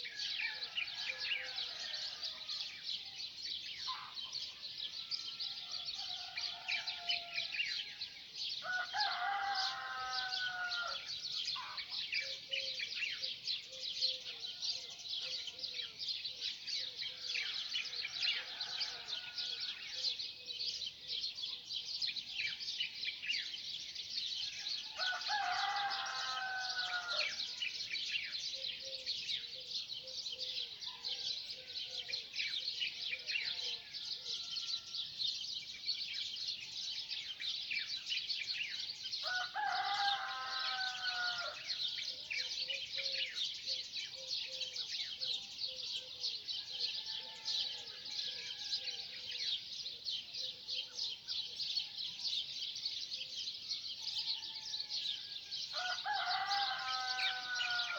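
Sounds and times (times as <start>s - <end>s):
small birds chirping: 0.0s - 57.9s
rooster crowing: 5.5s - 7.6s, 8.6s - 11.1s, 18.1s - 19.8s, 24.9s - 27.5s, 39.2s - 41.7s, 46.7s - 49.0s, 54.2s - 57.9s.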